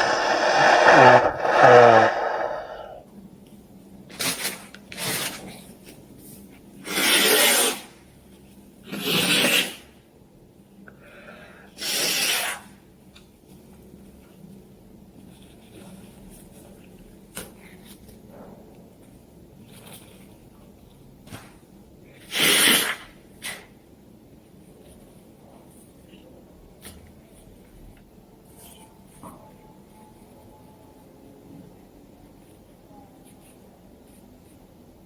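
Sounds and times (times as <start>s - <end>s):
breathy nasal sniffs and sneezes: 0.0s - 3.0s.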